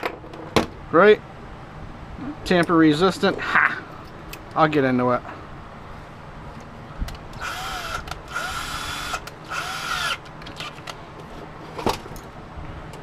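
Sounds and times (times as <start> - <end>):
power drill whining: 7.4 - 10.8.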